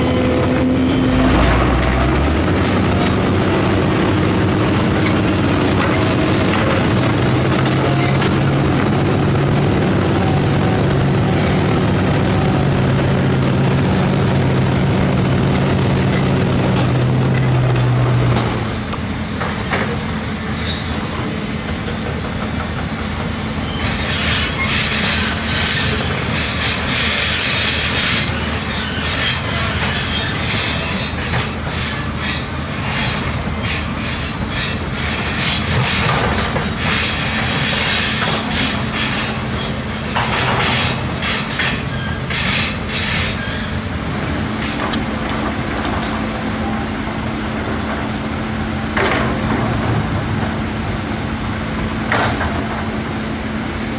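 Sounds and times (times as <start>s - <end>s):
high metallic squeal: 0.0s - 3.4s, 20.6s - 21.2s, 23.6s - 43.9s
diesel engine running: 0.0s - 20.4s, 21.7s - 53.9s.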